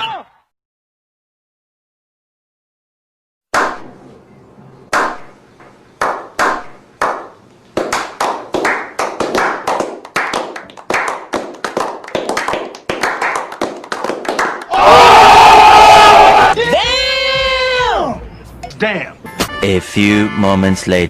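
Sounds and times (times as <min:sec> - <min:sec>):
hand clapping: 0:06.0 - 0:14.7.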